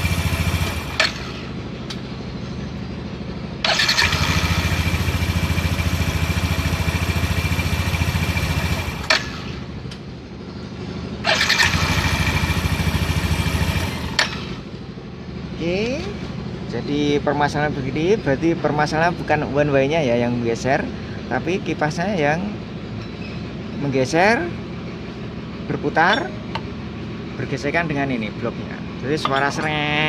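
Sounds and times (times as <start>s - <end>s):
scooter engine running: 0.0s - 15.4s.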